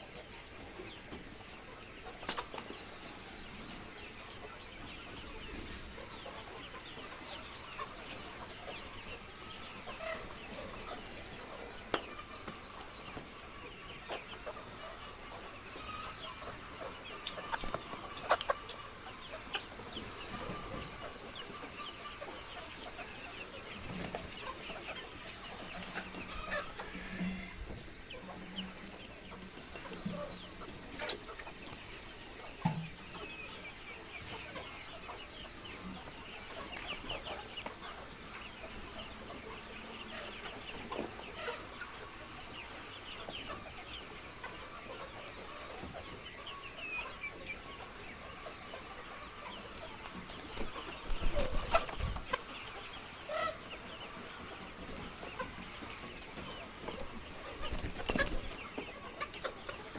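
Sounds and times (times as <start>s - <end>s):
chickens clucking: 0.0s - 59.9s.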